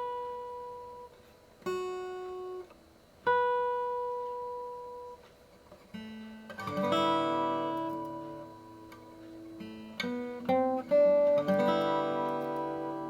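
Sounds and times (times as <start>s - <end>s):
acoustic guitar fingerstyle: 0.0s - 13.0s.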